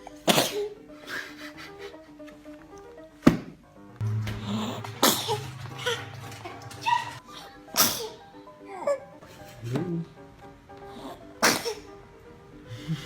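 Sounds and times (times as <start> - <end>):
background music: 0.0 - 13.0
baby sneezing: 0.2 - 0.8, 5.0 - 6.0, 7.7 - 8.3, 11.4 - 11.9.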